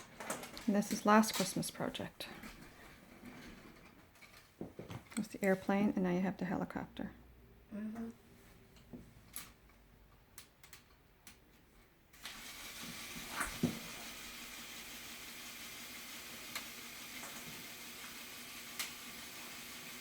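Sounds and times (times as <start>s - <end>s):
small electric motor whirring: 12.2s - 20.0s.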